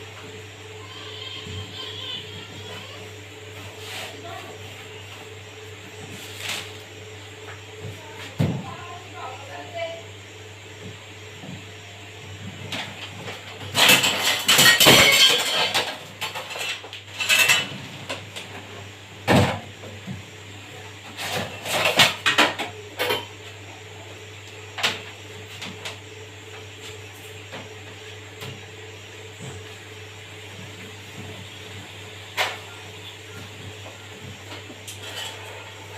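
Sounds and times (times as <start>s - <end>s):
parts and tools clattering: 12.8s - 17.8s.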